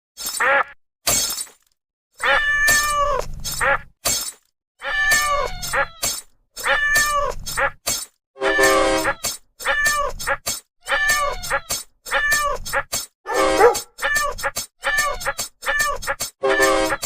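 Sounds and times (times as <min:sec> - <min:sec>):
glass breaking: 0:01.1 - 0:01.8
cat meowing: 0:02.2 - 0:03.3, 0:04.8 - 0:06.0, 0:06.6 - 0:07.4, 0:08.4 - 0:17.0.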